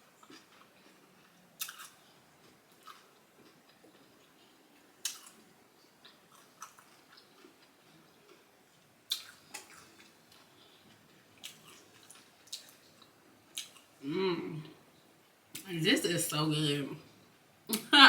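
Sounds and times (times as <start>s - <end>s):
faint chewing: 0.0s - 14.0s.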